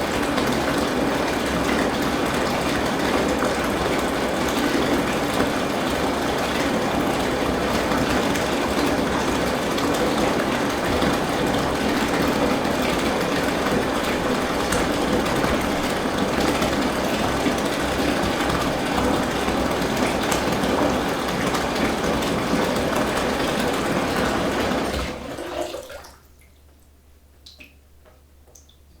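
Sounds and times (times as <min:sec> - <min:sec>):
water pouring into bathtub: 0:00.0 - 0:26.5
faint water drips: 0:25.8 - 0:29.0.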